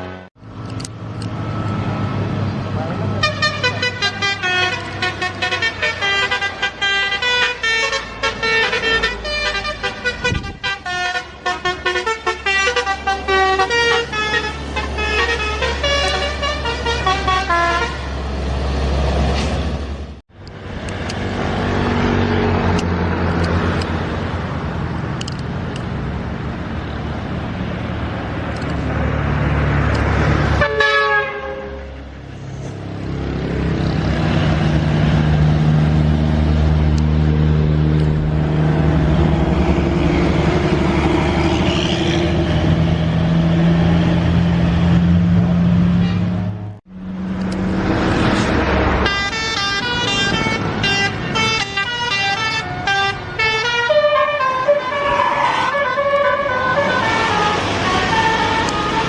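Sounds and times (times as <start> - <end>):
bus engine drone: 0.0 - 59.0
road noise: 0.0 - 59.0
multi-tone musical air horn: 3.2 - 18.1, 30.6 - 32.0, 49.0 - 59.0.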